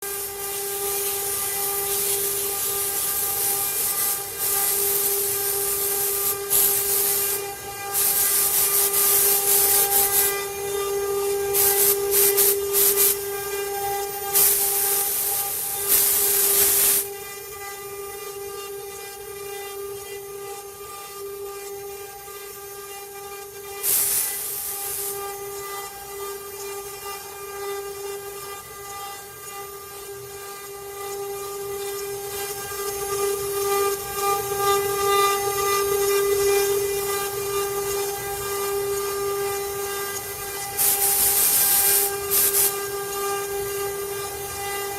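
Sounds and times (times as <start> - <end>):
loud hiss: 0.1 - 10.7, 11.4 - 13.5, 14.1 - 17.1, 23.8 - 25.2, 40.6 - 43.1.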